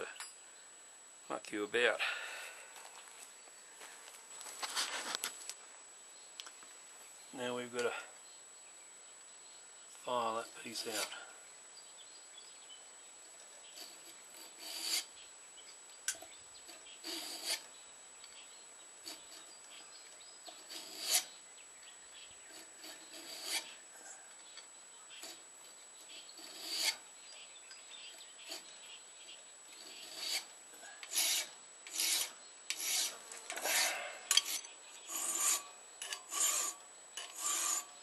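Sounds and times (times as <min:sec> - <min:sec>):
hand file rasping metal: 0:10.7 - 0:11.2, 0:13.6 - 0:15.1, 0:16.7 - 0:17.7, 0:19.0 - 0:19.6, 0:20.4 - 0:21.3, 0:22.4 - 0:23.8, 0:25.2 - 0:25.4, 0:26.0 - 0:27.1, 0:28.1 - 0:28.8, 0:29.8 - 0:38.0.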